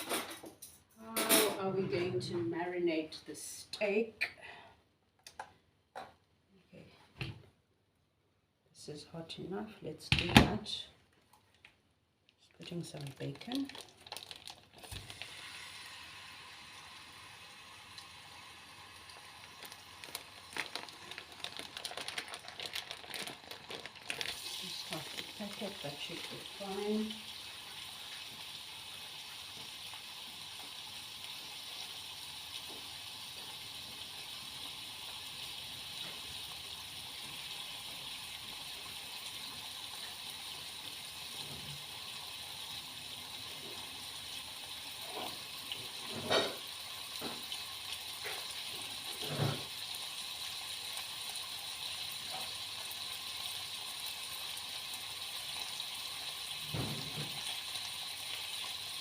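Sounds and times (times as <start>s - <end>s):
bacon sizzling in frying pan: 13.3s - 59.0s.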